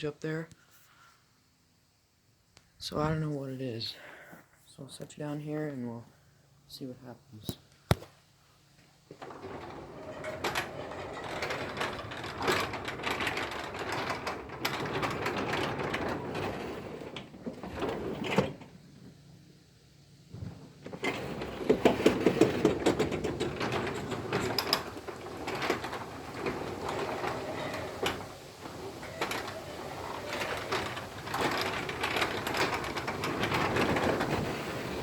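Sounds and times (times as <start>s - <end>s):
garage door opener rattling: 9.1s - 19.2s, 20.4s - 35.0s.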